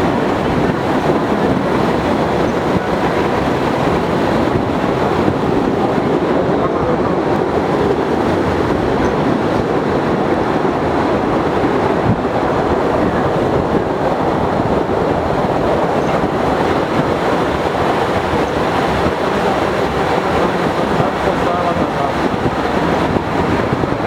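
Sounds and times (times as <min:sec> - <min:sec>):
train wheels rumbling on rails: 0:00.0 - 0:24.0.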